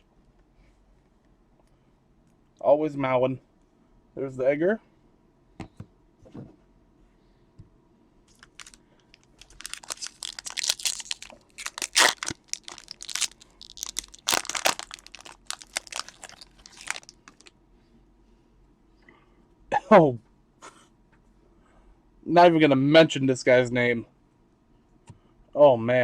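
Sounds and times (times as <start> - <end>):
wrapper tearing and crinkling: 8.3 - 17.5.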